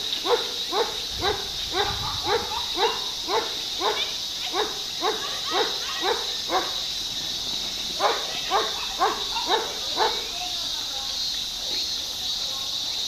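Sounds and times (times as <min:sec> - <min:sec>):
dog barking: 0:00.2 - 0:06.8, 0:08.0 - 0:10.3.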